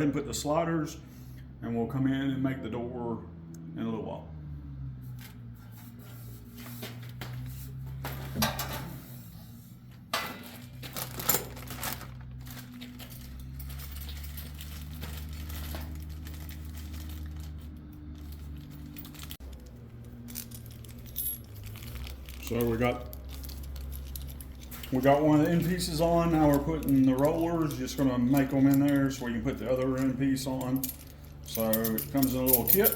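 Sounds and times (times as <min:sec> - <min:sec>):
metal hardware clinking and scraping: 0:05.1 - 0:11.8, 0:12.4 - 0:32.9.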